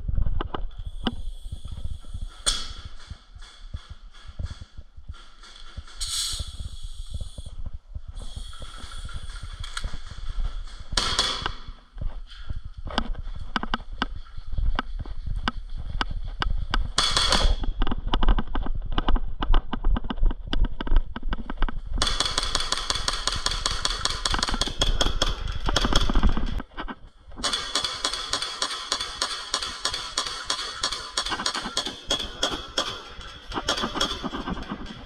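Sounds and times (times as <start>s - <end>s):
low rumble of wind: 0.0s - 22.0s
airsoft guns firing: 11.0s - 11.6s, 22.0s - 26.5s, 27.4s - 34.8s.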